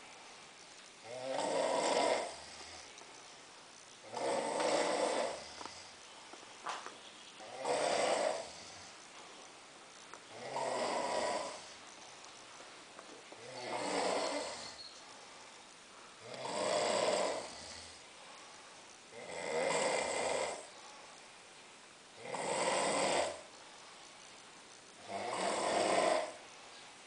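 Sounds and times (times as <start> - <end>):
quiet breathing: 0.0 - 27.0
man snoring: 1.0 - 2.9, 4.0 - 5.9, 7.4 - 8.9, 10.3 - 11.8, 13.4 - 14.8, 16.2 - 18.0, 19.1 - 20.7, 22.2 - 23.5, 25.0 - 26.4.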